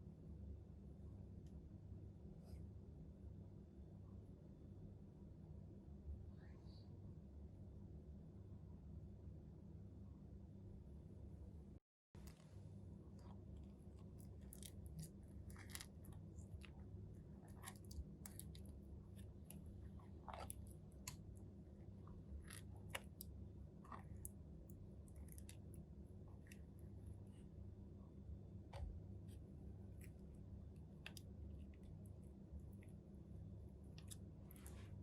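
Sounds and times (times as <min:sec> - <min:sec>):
crunchy slime crackling: 0:13.2 - 0:25.8.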